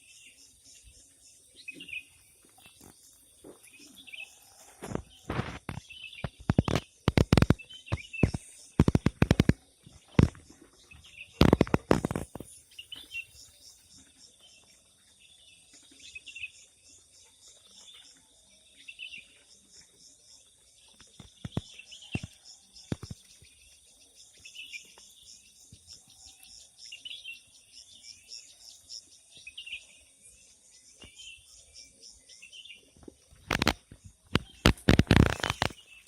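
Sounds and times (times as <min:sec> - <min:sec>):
songbirds chirping: 0:00.0 - 0:36.0
sharp clicks: 0:05.3 - 0:09.6, 0:33.4 - 0:36.0
crickets chorus: 0:15.2 - 0:36.0.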